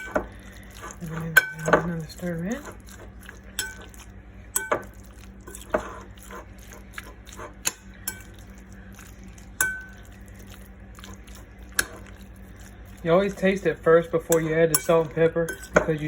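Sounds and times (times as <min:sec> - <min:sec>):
steady low hum: 0:00.0 - 0:16.0
utensil clinking against bowl: 0:01.0 - 0:02.9, 0:03.5 - 0:04.0, 0:04.6 - 0:05.9, 0:07.6 - 0:08.4, 0:09.6 - 0:10.1, 0:13.1 - 0:16.0.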